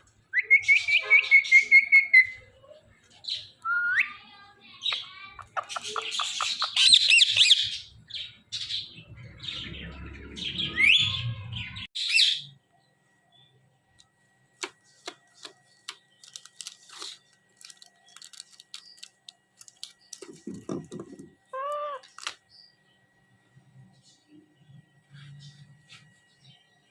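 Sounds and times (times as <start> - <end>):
parrot chirping and squawking: 4.9 - 8.0, 10.6 - 12.5, 21.5 - 22.2.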